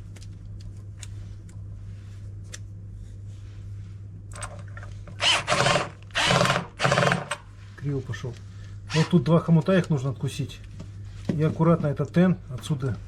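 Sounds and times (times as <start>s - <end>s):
cordless drill bursts: 5.2s - 7.4s, 8.9s - 9.2s.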